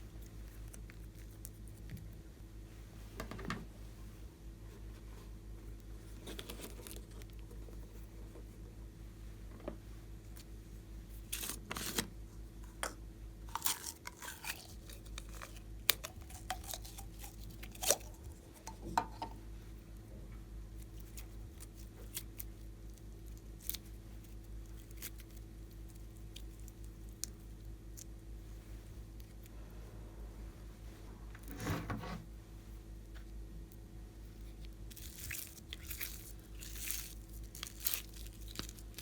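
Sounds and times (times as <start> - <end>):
low electrical hum: 0.0 - 39.0.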